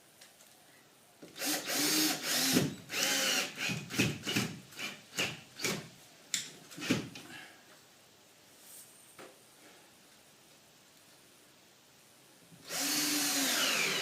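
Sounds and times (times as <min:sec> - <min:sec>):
cordless drill driving screws: 0:01.4 - 0:05.8, 0:12.6 - 0:14.0.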